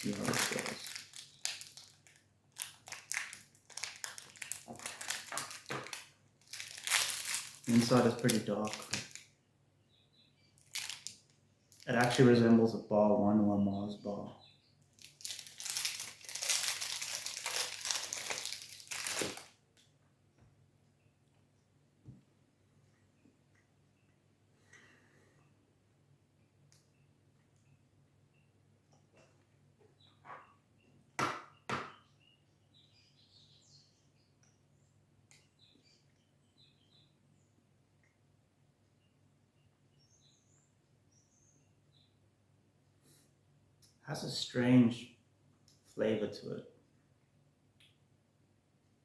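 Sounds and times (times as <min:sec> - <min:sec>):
plastic wrapper crinkling: 0:00.0 - 0:09.3, 0:10.6 - 0:12.3, 0:14.9 - 0:19.5
faint bird chirps: 0:22.8 - 0:38.2, 0:38.8 - 0:42.3.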